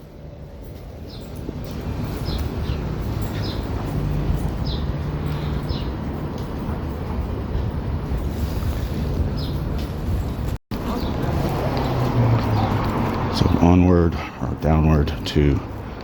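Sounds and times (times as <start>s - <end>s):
city street traffic rumbling: 0.0s - 16.0s.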